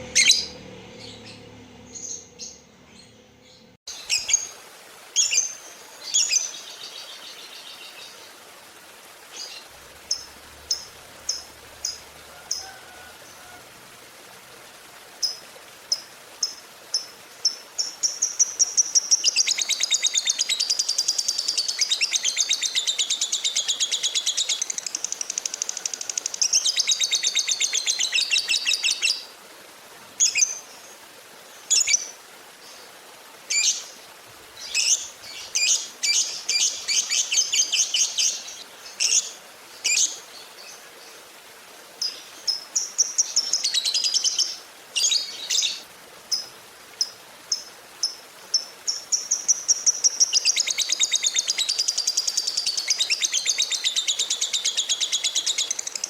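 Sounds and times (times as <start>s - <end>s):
bird chirping: 0.0s - 4.5s.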